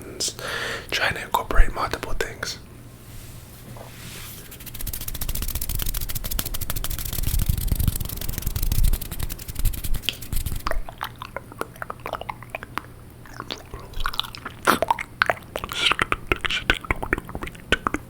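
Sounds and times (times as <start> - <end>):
wet tongue and lip clicks: 4.6 - 18.0
water swishing in mouth: 7.9 - 18.0.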